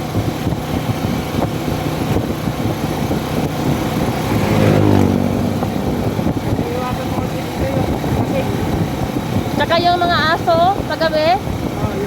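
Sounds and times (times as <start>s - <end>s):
car engine and road rumble: 0.0s - 12.0s
engine tone rising in pitch: 3.2s - 8.1s.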